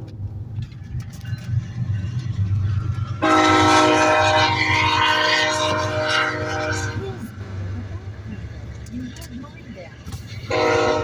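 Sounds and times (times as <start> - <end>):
moving car rumble: 0.0 - 11.0
locomotive air horn chord: 3.2 - 7.2, 10.4 - 11.0.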